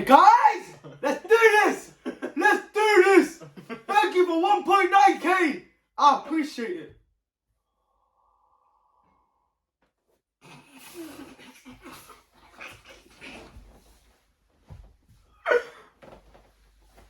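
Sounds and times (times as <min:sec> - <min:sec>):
young man gasping and coughing: 0:15.4 - 0:16.0.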